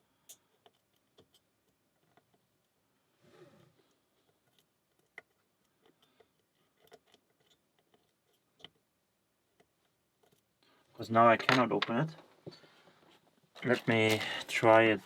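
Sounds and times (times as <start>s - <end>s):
quiet handling: 9.5s - 15.0s.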